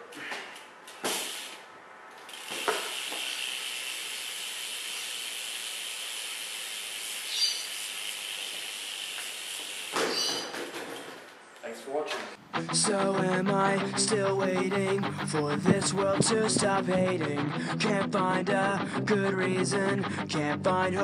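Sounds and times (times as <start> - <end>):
bike hub freewheeling ratchet buzz: 2.2 - 10.5.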